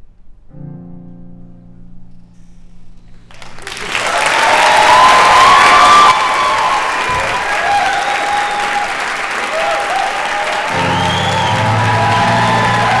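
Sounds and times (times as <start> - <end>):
audience applauding: 3.3 - 13.0
music playing: 10.6 - 13.0.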